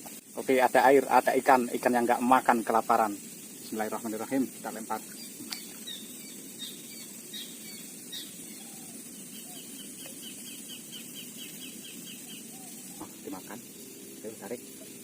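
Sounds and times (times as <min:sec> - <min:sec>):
small birds chirping: 0:00.0 - 0:15.0
steady low background noise: 0:00.0 - 0:15.0.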